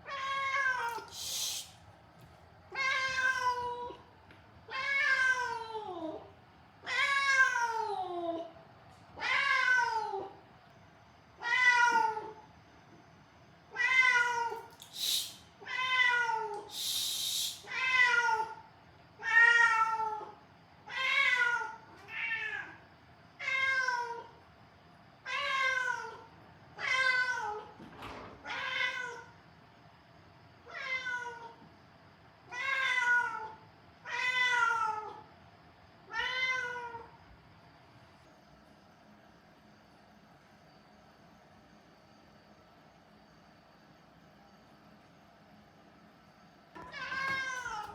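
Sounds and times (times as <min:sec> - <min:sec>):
cat meowing: 0:02.7 - 0:04.0, 0:28.4 - 0:29.3, 0:30.7 - 0:31.5, 0:36.1 - 0:37.1.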